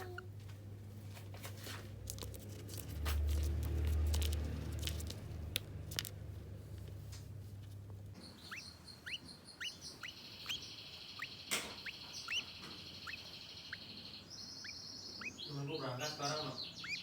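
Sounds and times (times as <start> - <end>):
lovebirds chirping: 0.0 - 0.4, 8.1 - 17.0.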